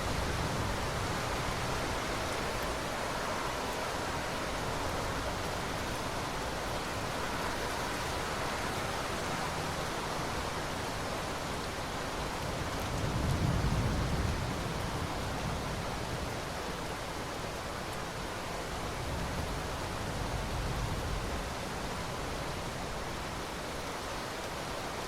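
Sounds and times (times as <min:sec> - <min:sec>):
steady rain falling: 0:00.0 - 0:25.0.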